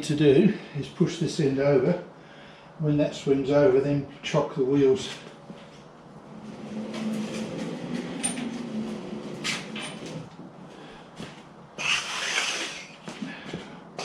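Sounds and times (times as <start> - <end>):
wheels rolling on workshop floor: 5.5 - 10.6
low humming tone: 6.0 - 10.8.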